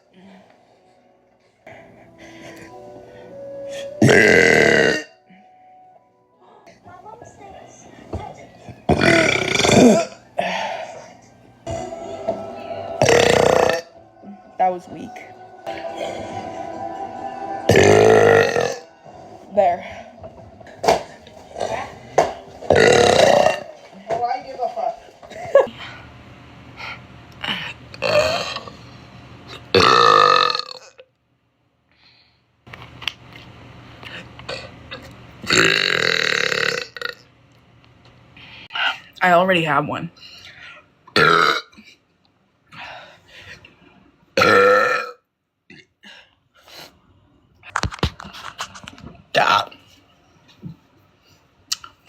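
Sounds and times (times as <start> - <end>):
woman burping: 4.0 - 5.2, 8.9 - 10.6, 13.0 - 13.9, 17.7 - 18.8, 22.7 - 23.7, 28.0 - 28.7, 29.7 - 31.0, 34.5 - 37.2, 41.1 - 41.9, 44.4 - 46.0.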